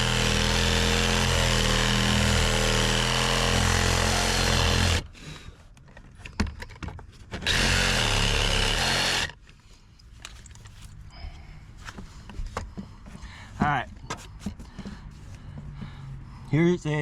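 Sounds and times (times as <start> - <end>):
reciprocating saw cutting wood: 0.0 - 5.1, 7.4 - 9.3.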